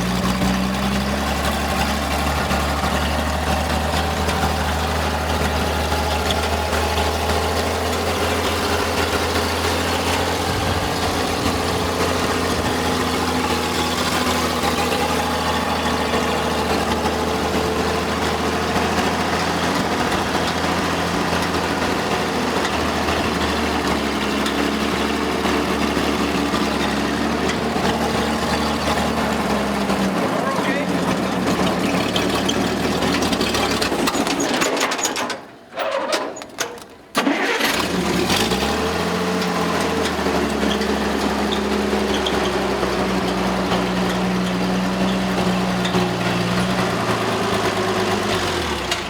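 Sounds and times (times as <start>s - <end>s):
engine idling: 0.0s - 34.8s, 36.8s - 49.0s.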